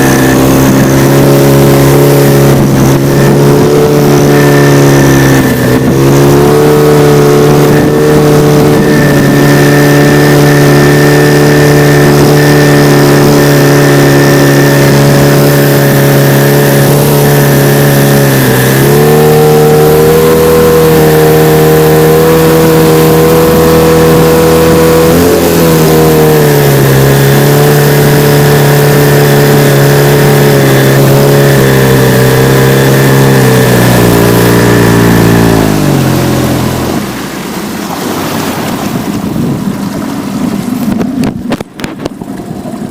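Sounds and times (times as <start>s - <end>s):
outboard motor running: 0.0s - 42.9s.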